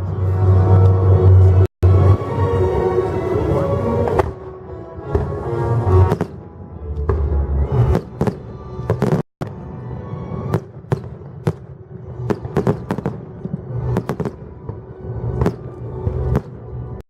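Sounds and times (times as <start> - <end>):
music: 0.0 - 17.0
fireworks bangs and crackles: 6.0 - 17.0.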